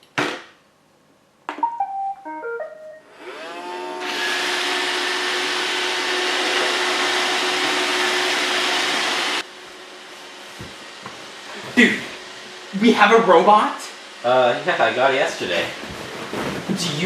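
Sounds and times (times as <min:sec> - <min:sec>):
robot vacuum beeping tune: 0:01.6 - 0:03.4
vacuum motor whine: 0:03.1 - 0:14.6.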